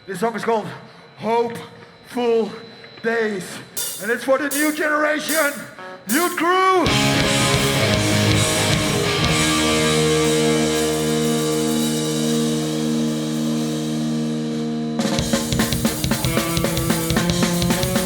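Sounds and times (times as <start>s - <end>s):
punk band playing fast beat: 6.2s - 18.0s
distorted electric guitar chords: 6.9s - 18.0s.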